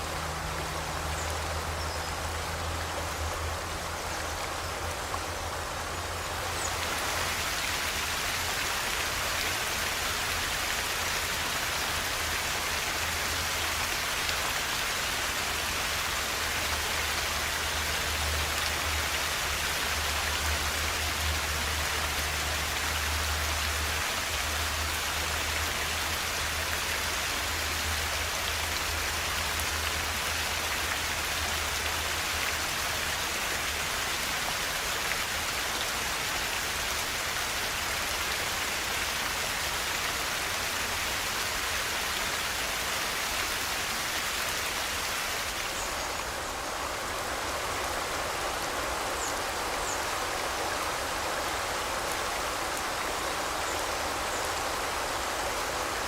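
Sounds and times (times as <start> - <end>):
river flowing: 0.0 - 56.0.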